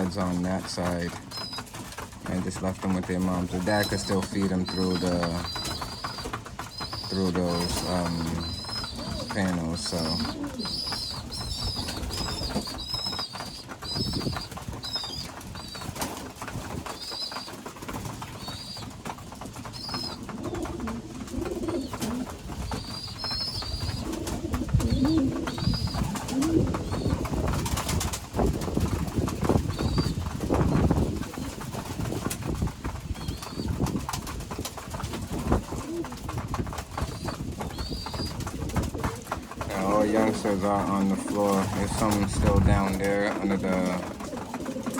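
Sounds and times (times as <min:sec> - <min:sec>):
pigeons cooing: 0:00.0 - 0:44.9
squeaky pigeon peeps: 0:01.2 - 0:01.7, 0:03.6 - 0:16.1, 0:16.7 - 0:19.0, 0:19.6 - 0:28.1, 0:29.4 - 0:31.7, 0:33.1 - 0:33.9, 0:37.0 - 0:38.5.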